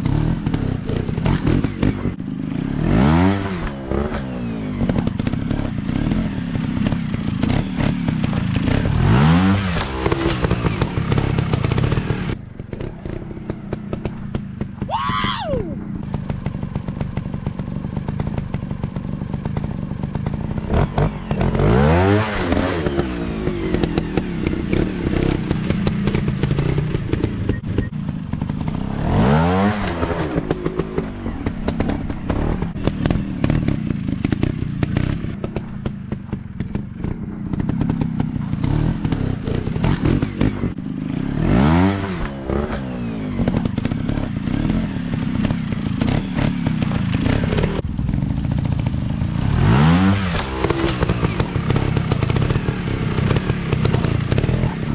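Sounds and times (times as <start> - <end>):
dirt bike engine revving: 0.0 - 54.9.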